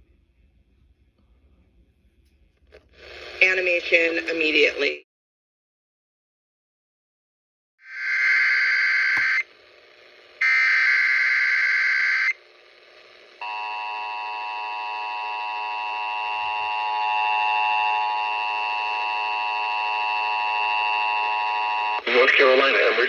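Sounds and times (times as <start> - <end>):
data burst tones: 7.9 - 9.5.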